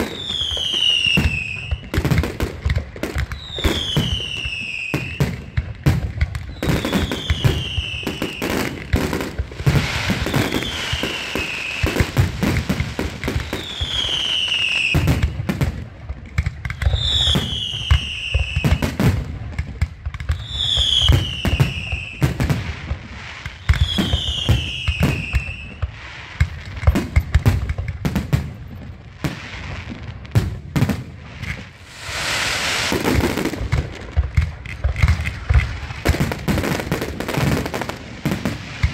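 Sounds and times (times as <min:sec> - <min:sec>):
falling firework whistle: 0:00.0 - 0:02.2, 0:03.2 - 0:05.6, 0:06.4 - 0:09.1, 0:09.7 - 0:12.3, 0:13.2 - 0:15.5, 0:16.7 - 0:19.0, 0:20.3 - 0:22.6, 0:23.4 - 0:26.1, 0:31.7 - 0:33.5
firecrackers crackling: 0:00.0 - 0:38.9
firework bangs: 0:00.0 - 0:38.9
hissing firework burst: 0:06.5 - 0:15.5, 0:30.8 - 0:38.9.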